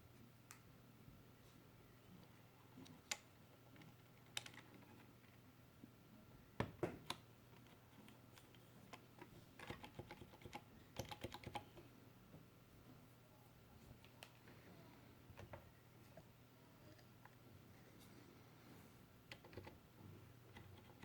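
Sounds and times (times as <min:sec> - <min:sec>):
mechanical keyboard typing: 0:09.6 - 0:11.8, 0:19.3 - 0:19.8, 0:20.5 - 0:21.0.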